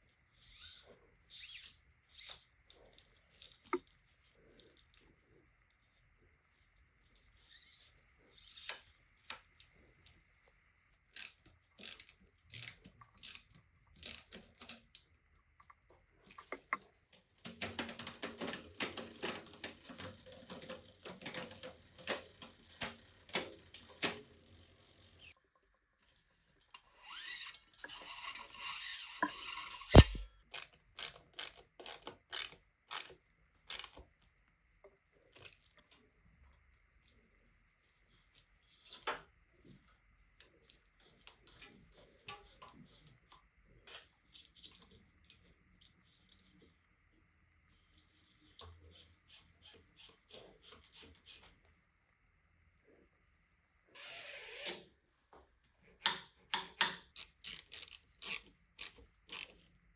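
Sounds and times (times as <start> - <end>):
fast ratcheting clicks: 17.5 - 25.4.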